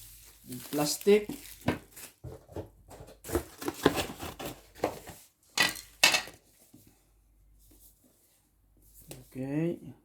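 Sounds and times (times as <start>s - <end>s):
plastic wrapping crinkling: 0.0s - 4.8s.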